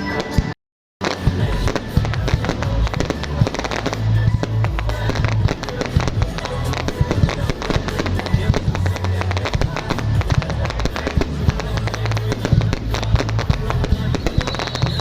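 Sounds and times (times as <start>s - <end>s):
fireworks crackling and popping: 0.0s - 15.0s
loud music with bass: 0.0s - 15.0s.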